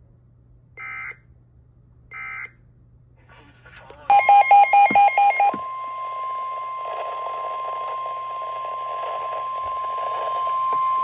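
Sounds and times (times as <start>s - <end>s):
steady high alarm tone: 4.1s - 6.9s
radio static and hum: 6.0s - 11.0s.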